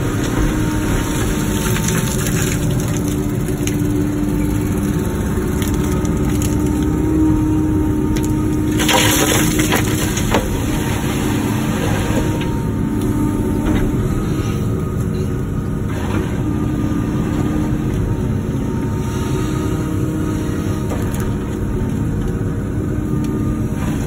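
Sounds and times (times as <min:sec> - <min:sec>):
crunching and scraping of rock: 0:00.0 - 0:14.6
excavator diesel engine running: 0:00.0 - 0:24.0.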